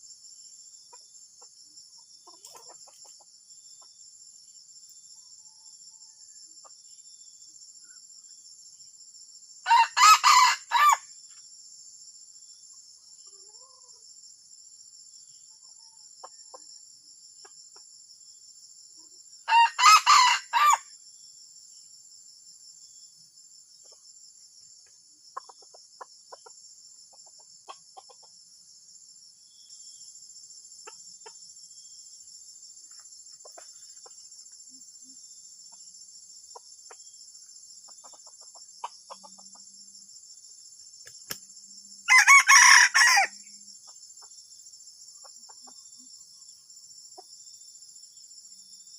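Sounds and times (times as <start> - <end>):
rooster crowing: 9.7 - 11.0, 19.5 - 20.9, 42.1 - 43.5
high insect buzz: 17.0 - 48.9.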